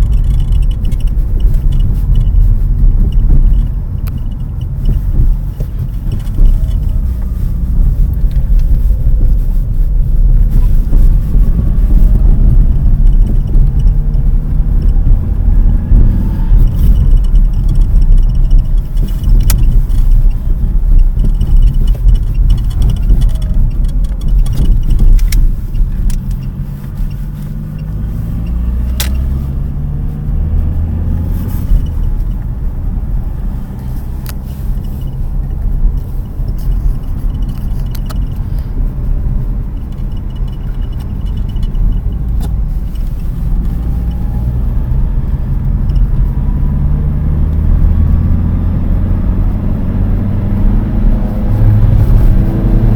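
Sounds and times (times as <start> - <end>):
hood hinge clicks and creaks: 0.0 - 7.4, 12.2 - 29.8, 33.4 - 46.2
car engine and road rumble: 0.0 - 52.9.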